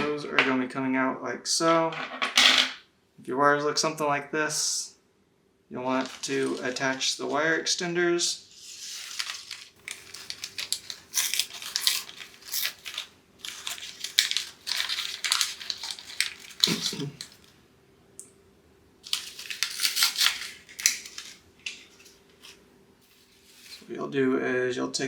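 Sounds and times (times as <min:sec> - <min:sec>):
plastic packaging crinkling: 0:05.8 - 0:07.6, 0:08.4 - 0:17.6, 0:19.0 - 0:23.8.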